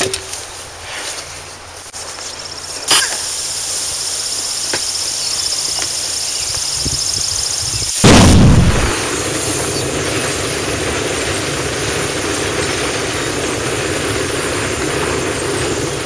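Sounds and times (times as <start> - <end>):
loud steady hissing: 0.0 - 16.0
loud boom: 8.0 - 10.0.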